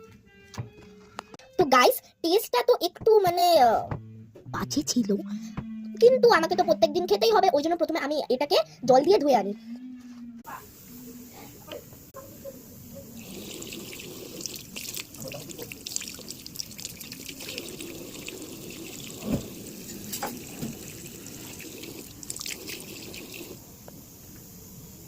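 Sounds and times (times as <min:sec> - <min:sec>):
tap water running: 0:13.2 - 0:23.6.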